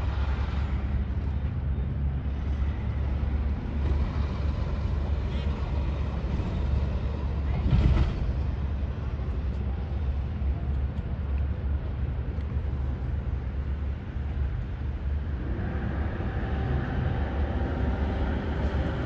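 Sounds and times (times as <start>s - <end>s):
low rumble of vehicle engines: 0.0s - 19.0s
pitched engine drone: 12.7s - 19.0s.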